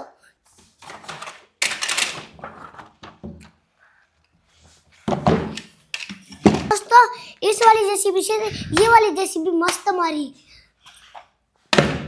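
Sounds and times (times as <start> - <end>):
plastic toys clattering: 0.8 - 3.2, 5.3 - 6.7.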